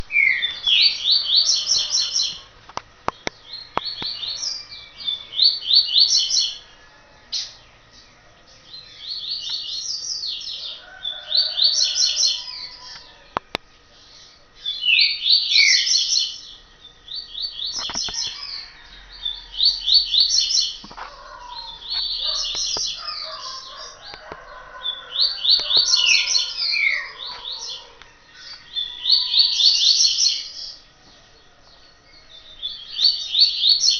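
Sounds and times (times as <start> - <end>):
sharp bird clicks: 2.3 - 4.4, 17.7 - 18.4.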